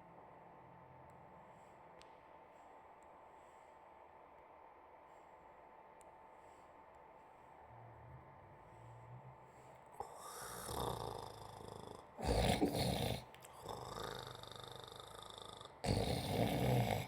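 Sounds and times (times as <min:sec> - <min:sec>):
soft breathing: 0:01.1 - 0:17.0
person snoring: 0:10.0 - 0:17.0.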